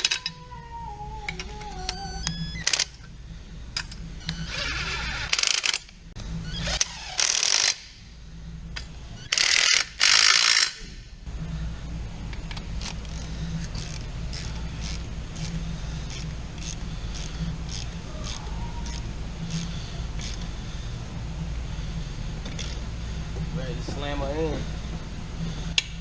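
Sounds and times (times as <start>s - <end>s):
low steady hum: 0.0s - 26.0s
ratchet wrench clicking: 5.3s - 5.9s, 6.8s - 7.9s, 9.2s - 10.8s, 12.5s - 20.4s.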